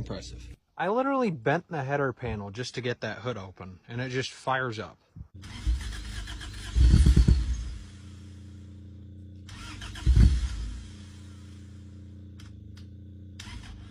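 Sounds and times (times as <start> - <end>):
car engine revving and idling: 5.4 - 13.9.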